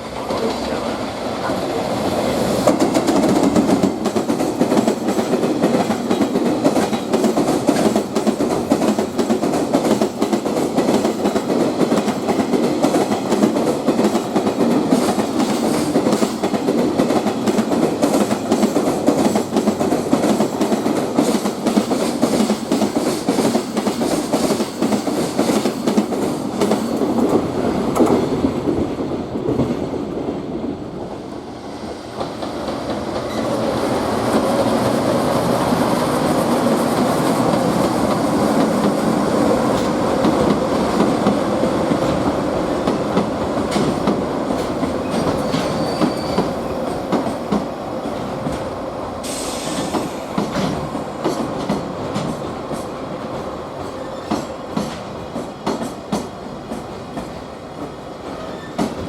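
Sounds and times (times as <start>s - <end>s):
train wheels clattering over rail joints: 2.6s - 28.8s, 42.8s - 59.0s
train wheel squeal: 33.2s - 33.9s, 45.0s - 46.7s, 49.2s - 50.2s, 53.8s - 54.5s, 58.4s - 59.0s.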